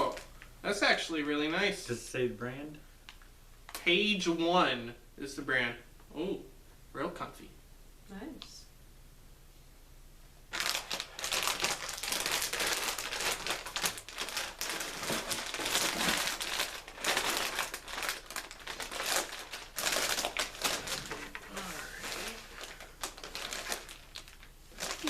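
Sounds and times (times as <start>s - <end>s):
plastic packaging crinkling: 0.0s - 0.5s, 10.5s - 25.0s.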